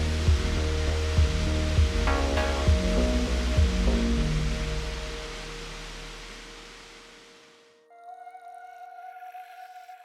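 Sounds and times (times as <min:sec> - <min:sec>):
rushing hiss: 0:00.0 - 0:07.7
background music held notes: 0:00.0 - 0:10.0.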